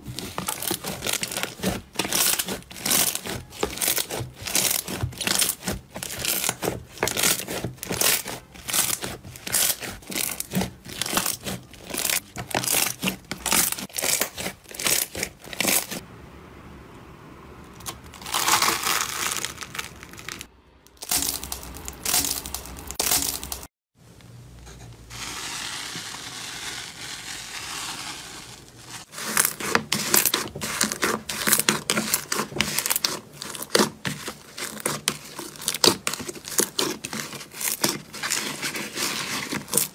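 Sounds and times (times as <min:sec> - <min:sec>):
slime squished by hand: 0:00.0 - 0:16.0.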